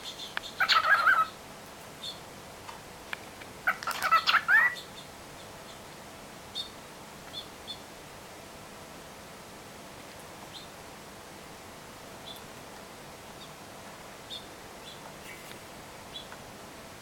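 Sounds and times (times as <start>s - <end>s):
cockatiel chirping: 0.0s - 1.4s, 3.7s - 5.0s
faint background hiss: 0.0s - 17.0s.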